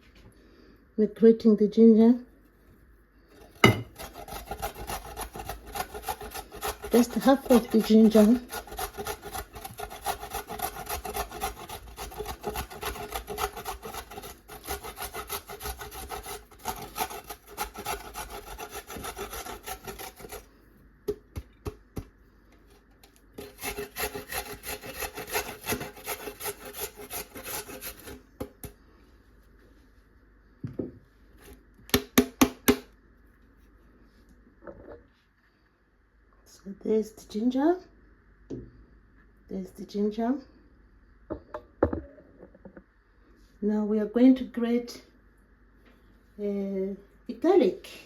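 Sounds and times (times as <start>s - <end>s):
ginger being grated: 3.4s - 20.5s, 23.4s - 28.3s.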